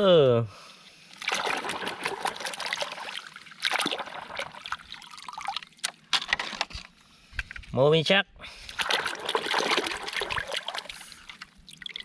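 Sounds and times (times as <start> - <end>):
water splashing and trickling: 1.2 - 6.1, 8.6 - 12.0.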